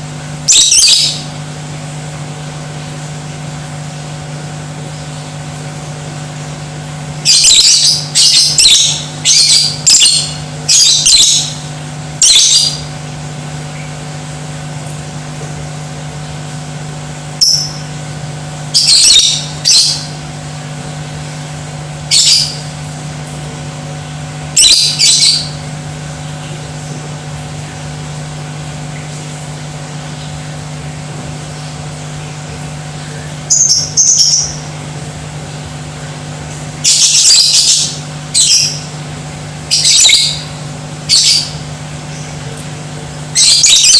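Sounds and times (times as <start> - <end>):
steady low hum: 0.0 - 43.9
lovebird chattering: 0.5 - 1.2, 7.2 - 11.6, 12.2 - 12.9, 17.4 - 17.9, 18.7 - 20.2, 22.1 - 22.7, 24.6 - 25.6, 33.5 - 34.6, 36.8 - 38.9, 39.7 - 42.4, 43.3 - 43.9.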